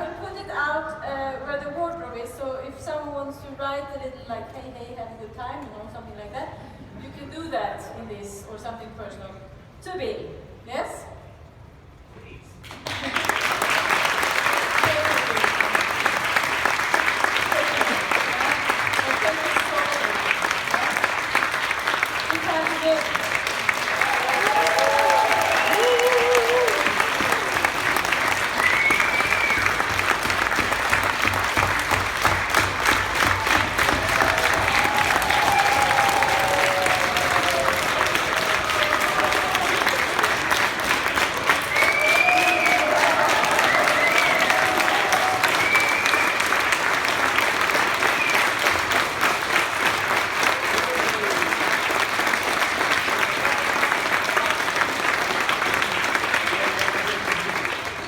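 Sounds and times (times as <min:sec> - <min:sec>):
people applauding: 0:12.6 - 0:58.0.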